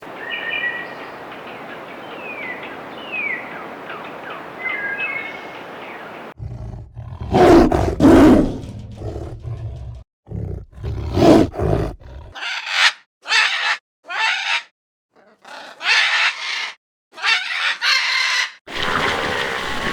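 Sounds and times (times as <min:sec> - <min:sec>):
steady outdoor hiss: 0:00.0 - 0:06.3
birds chirping: 0:00.0 - 0:06.4
large animal roaring: 0:06.4 - 0:12.4
rough animal calls: 0:06.4 - 0:18.6.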